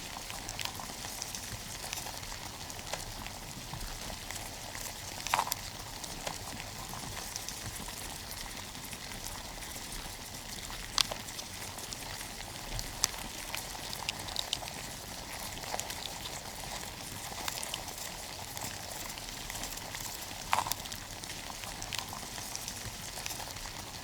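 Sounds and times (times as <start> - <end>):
cockroaches scratching in a box: 0.1 - 24.0.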